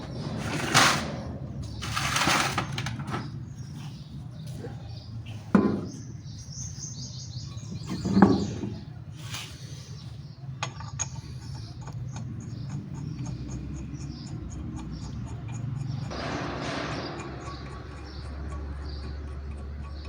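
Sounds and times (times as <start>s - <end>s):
steady low hum: 0.0s - 20.0s
sharp knocks: 16.1s - 18.4s.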